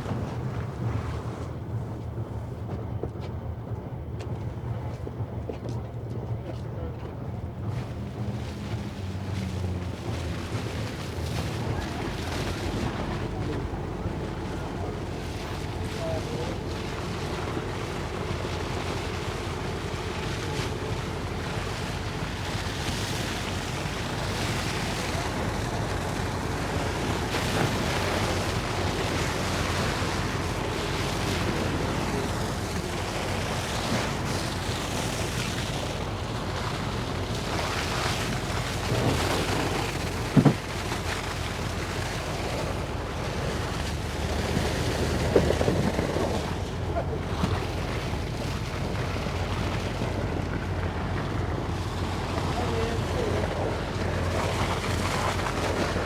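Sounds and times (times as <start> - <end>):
rushing wind and water: 0.0 - 56.0.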